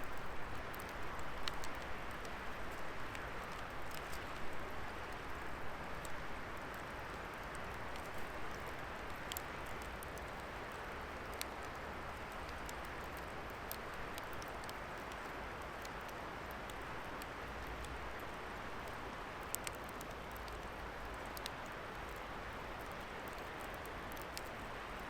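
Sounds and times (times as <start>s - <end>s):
burning wood crackling and popping: 0.0s - 25.0s.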